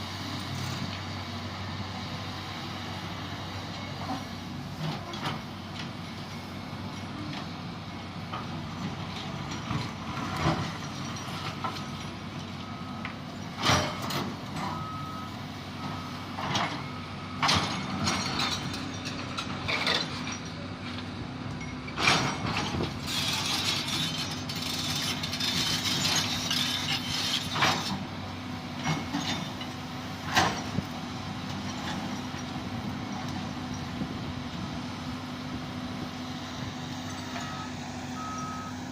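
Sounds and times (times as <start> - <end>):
diesel engine running: 0.0 - 38.9
faint high beeping: 37.2 - 38.9.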